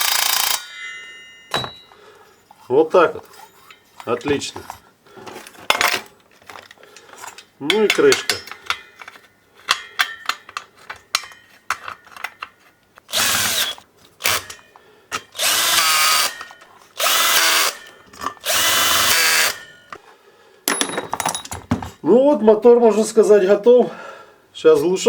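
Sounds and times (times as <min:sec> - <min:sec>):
cordless power driver running: 0:00.0 - 0:00.6, 0:13.1 - 0:14.4
clicks of parts handled: 0:03.7 - 0:13.1.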